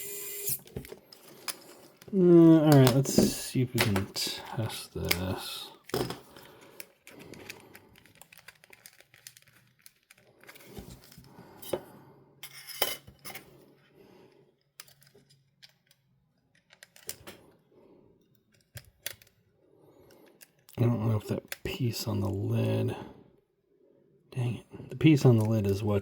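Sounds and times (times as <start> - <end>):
small parts clicking: 5.8 - 10.6, 14.7 - 17.3, 18.5 - 19.4.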